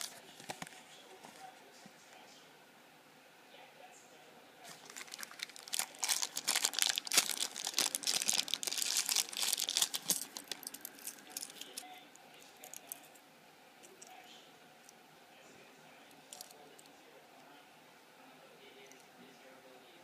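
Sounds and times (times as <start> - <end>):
wrapper crinkling and tearing: 4.7 - 11.8.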